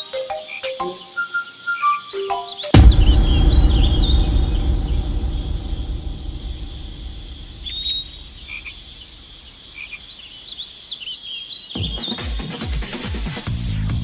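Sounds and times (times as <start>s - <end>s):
low rumble: 2.8s - 9.1s.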